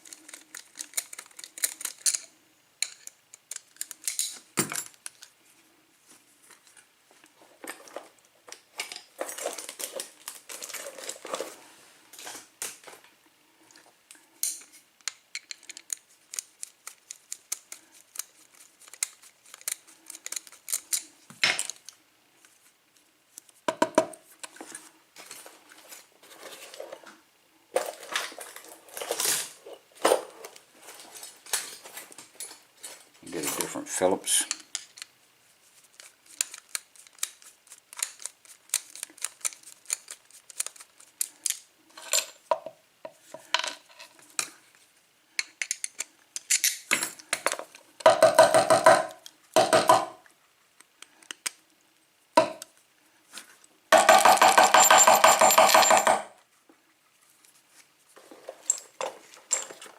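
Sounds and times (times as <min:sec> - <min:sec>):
metal tools clicking and clinking: 0:00.0 - 0:05.2, 0:45.4 - 0:47.7, 0:54.0 - 0:56.3, 0:58.5 - 0:59.9.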